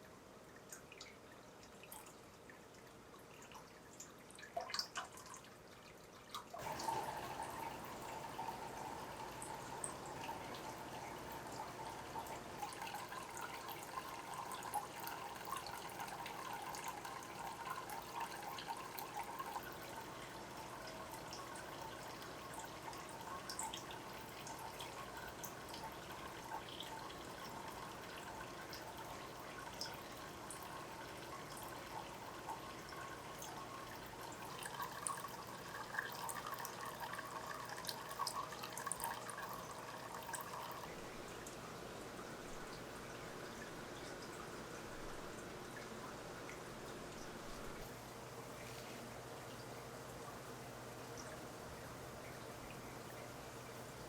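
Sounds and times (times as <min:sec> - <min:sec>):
water drips: 0:00.0 - 0:41.8
water trickling into aquarium: 0:00.0 - 0:54.0.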